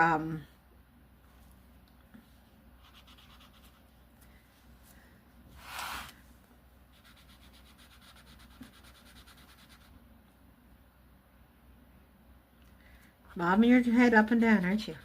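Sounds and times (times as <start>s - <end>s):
pencil shading on paper: 2.8s - 3.8s, 7.0s - 9.9s.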